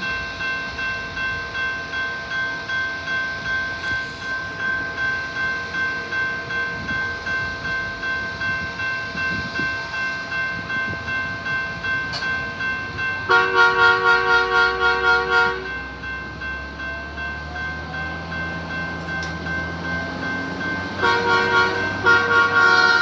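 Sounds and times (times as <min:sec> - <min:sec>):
railroad crossing bell ringing: 0:00.0 - 0:23.0
multi-note horn blast: 0:13.3 - 0:15.7, 0:21.0 - 0:23.0.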